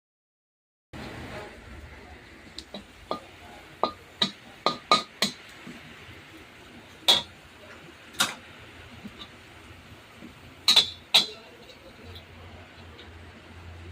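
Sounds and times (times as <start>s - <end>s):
utensils clinking against dishes: 10.6s - 13.1s.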